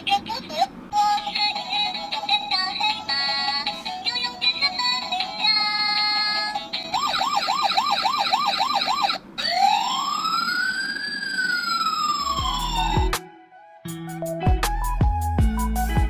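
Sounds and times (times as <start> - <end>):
toy electronic siren: 5.3 - 13.2
low bass beat: 12.4 - 13.2, 14.4 - 16.0.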